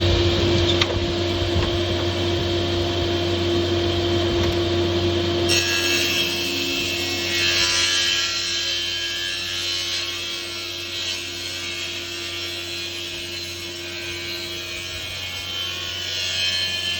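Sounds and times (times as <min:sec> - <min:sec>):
higher-pitched sawing: 0:05.4 - 0:16.9.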